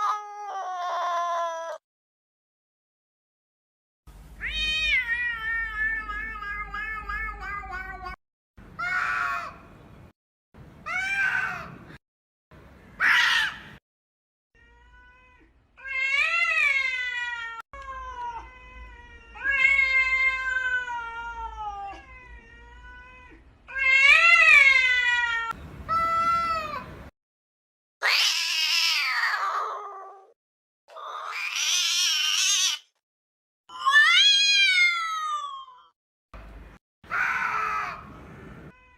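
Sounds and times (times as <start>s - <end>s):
cats yowling: 4.4s - 8.2s, 8.8s - 9.6s, 13.0s - 13.6s, 14.6s - 26.9s, 28.0s - 32.8s, 33.7s - 35.8s, 37.1s - 38.0s.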